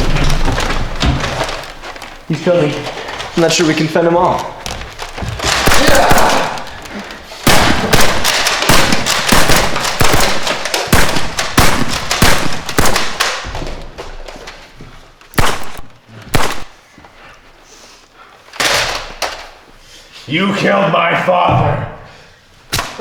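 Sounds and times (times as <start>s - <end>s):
rapid gunshots: 5.4s - 6.8s, 7.4s - 13.4s, 15.4s - 16.8s.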